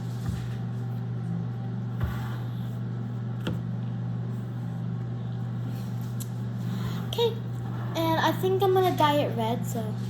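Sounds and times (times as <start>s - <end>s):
steady low hum with tones: 0.0s - 10.0s.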